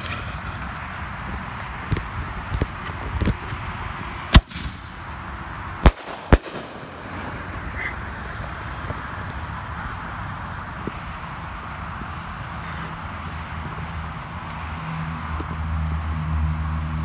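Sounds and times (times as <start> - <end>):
small firework pops: 0.0 - 0.8, 1.8 - 3.6, 4.4 - 4.9, 5.8 - 7.3
loud firework bangs: 4.3 - 5.1, 5.8 - 8.3.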